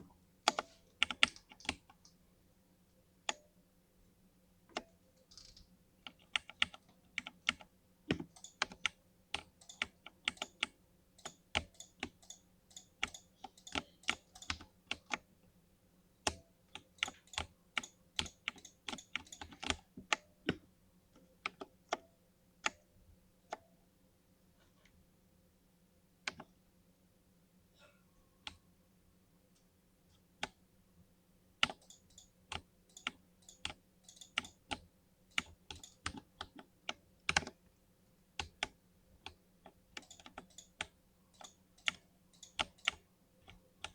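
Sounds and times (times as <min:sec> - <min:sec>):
mechanical keyboard typing: 0:00.5 - 0:01.9, 0:04.8 - 0:15.2, 0:16.3 - 0:20.6, 0:31.6 - 0:37.6, 0:38.4 - 0:43.9.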